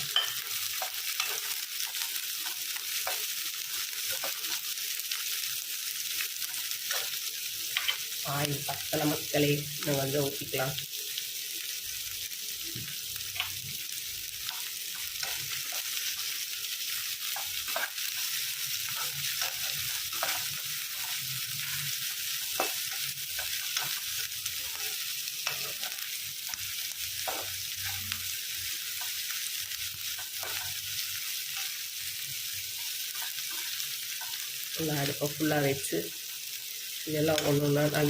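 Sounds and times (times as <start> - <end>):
onions sizzling in hot oil: 0.0 - 38.0.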